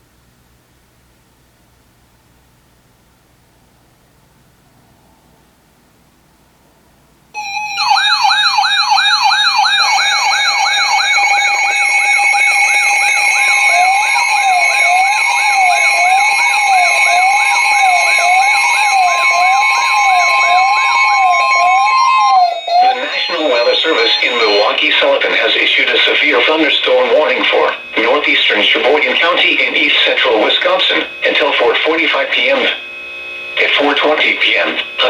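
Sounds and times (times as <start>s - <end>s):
slower siren wail: 7.4s - 31.7s
fast electronic siren wail: 7.4s - 33.1s
steady high siren tones: 7.4s - 35.0s
steady mid-pitched tone: 7.4s - 35.0s.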